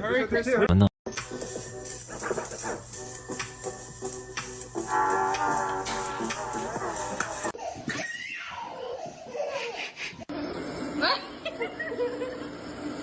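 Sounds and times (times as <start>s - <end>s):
people laughing: 11.4s - 12.5s.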